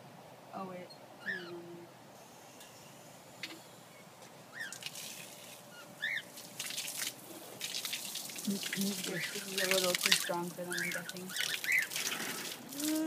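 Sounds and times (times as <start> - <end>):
cockatiel chirps: 1.2 - 1.6, 4.5 - 4.8, 5.7 - 6.3
tap water running: 4.7 - 13.0.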